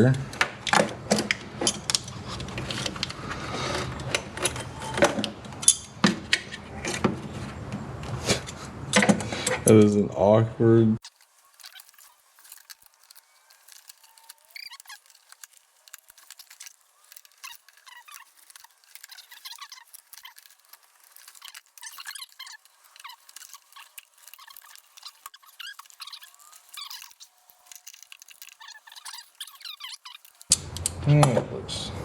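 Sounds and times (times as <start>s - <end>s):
rubber hose squeaking: 11.0s - 30.6s.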